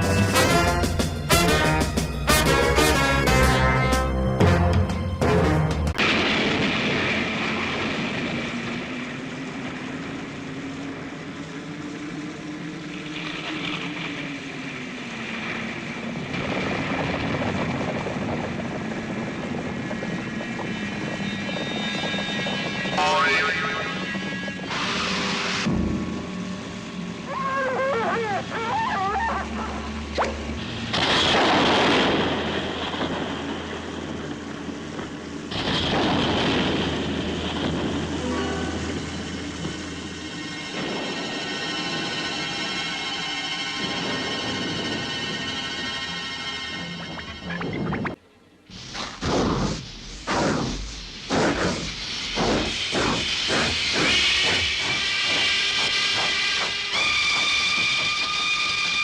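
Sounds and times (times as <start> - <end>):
loud rushing rumbling noise: 0.0 - 48.1, 48.7 - 59.0
steam train chuffing: 32.6 - 47.2, 48.8 - 59.0
whistle-like tone: 56.2 - 59.0.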